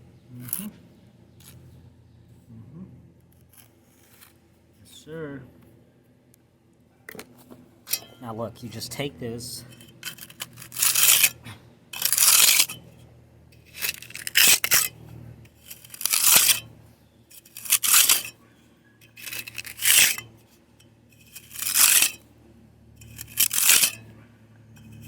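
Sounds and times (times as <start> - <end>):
hand tool scraping concrete: 7.9 - 13.0, 13.6 - 18.4, 19.0 - 20.4, 21.1 - 22.2, 23.0 - 24.1, 24.7 - 25.0.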